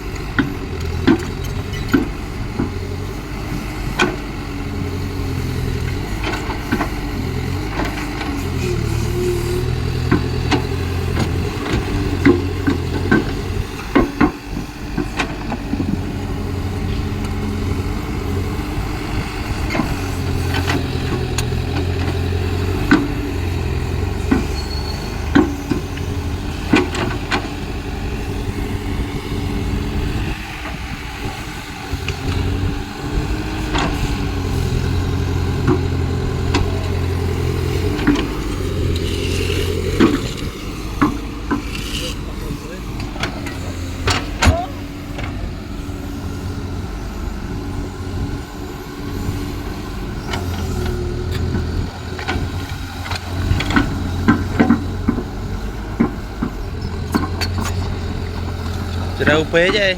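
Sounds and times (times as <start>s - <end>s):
excavator diesel engine running: 0.0s - 59.9s.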